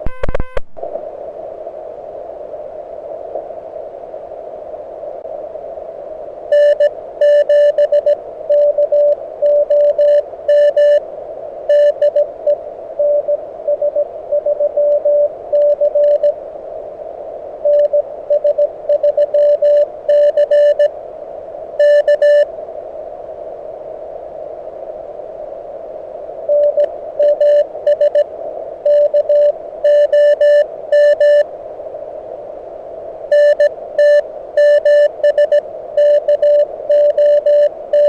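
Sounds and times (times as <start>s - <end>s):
morse code tone: 0.0s - 0.6s, 6.5s - 11.0s, 11.7s - 12.3s, 13.0s - 16.3s, 17.7s - 20.9s, 21.8s - 22.5s, 26.5s - 28.2s, 28.9s - 31.4s, 33.3s - 38.0s.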